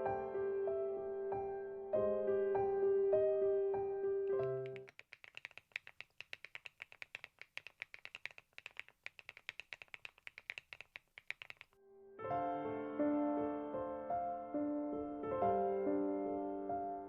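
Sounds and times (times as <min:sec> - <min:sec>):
mechanical keyboard typing: 0:04.4 - 0:11.8.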